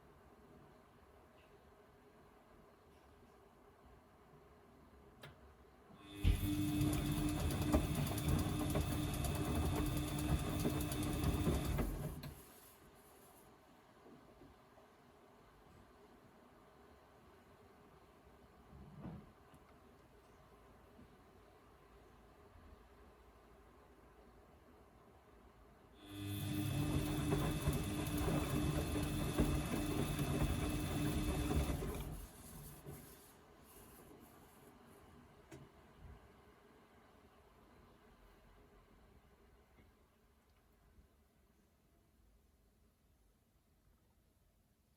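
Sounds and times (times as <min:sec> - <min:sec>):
washing machine motor humming: 0:06.1 - 0:12.5, 0:26.0 - 0:33.0.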